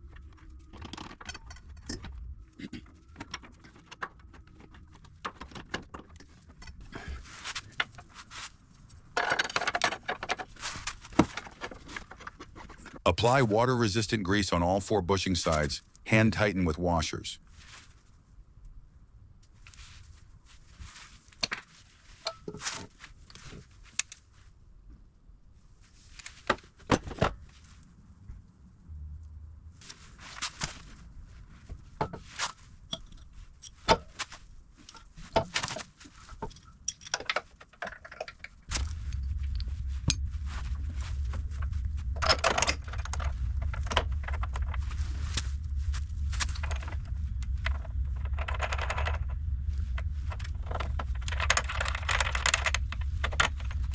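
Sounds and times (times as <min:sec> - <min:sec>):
steady low hum: 0:38.7 - 0:53.9.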